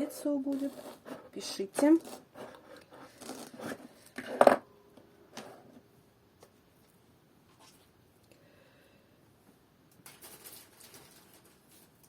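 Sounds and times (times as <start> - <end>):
rustling and scraping of craft materials: 0.0 - 4.7, 5.3 - 8.0, 10.0 - 12.0.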